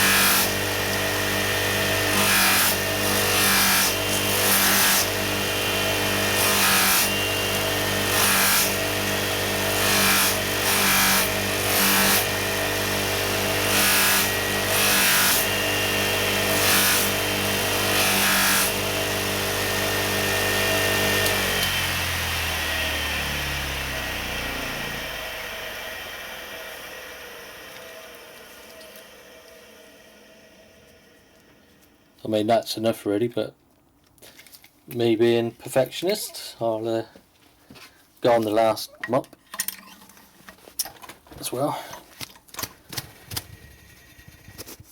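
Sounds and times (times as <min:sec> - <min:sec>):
bench grinder motor running: 0:00.0 - 0:31.9
motor winding down: 0:18.1 - 0:31.7.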